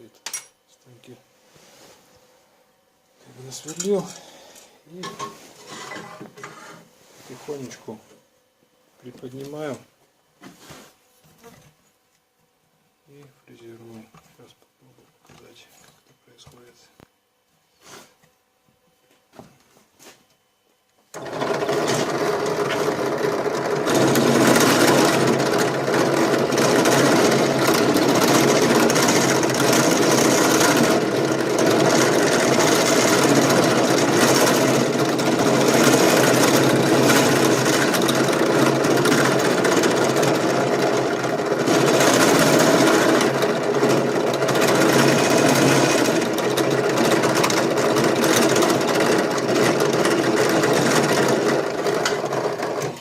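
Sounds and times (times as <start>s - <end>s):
drill press motor hum: 21.0s - 53.0s
router bit cutting metal chatter: 21.2s - 52.9s.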